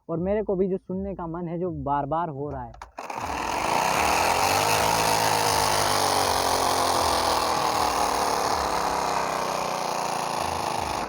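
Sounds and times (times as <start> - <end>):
bicycle bottle noise-maker buzzing: 2.9 - 11.0.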